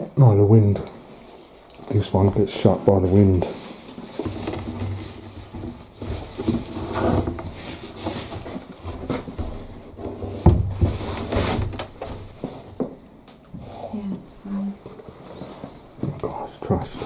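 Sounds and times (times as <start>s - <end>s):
wooden chair knocking and scuffing: 9.0s - 13.0s
heavy thump: 9.4s - 12.2s.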